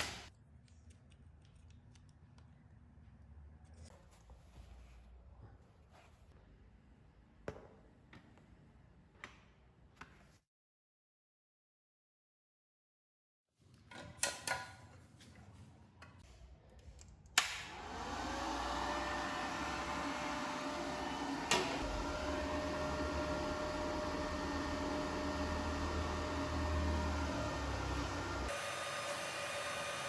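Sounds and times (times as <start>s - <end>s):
cooling fan humming: 17.7s - 30.0s.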